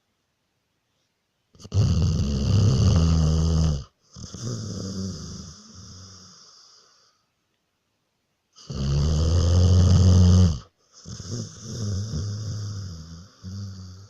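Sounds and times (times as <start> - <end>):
deep snoring: 1.6 - 7.1, 8.6 - 14.0.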